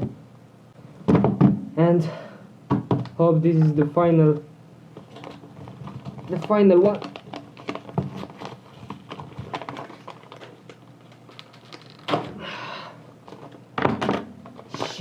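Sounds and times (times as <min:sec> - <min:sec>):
packaging wrap crinkling: 0:05.0 - 0:12.2
packaging wrap tearing: 0:05.2 - 0:12.1.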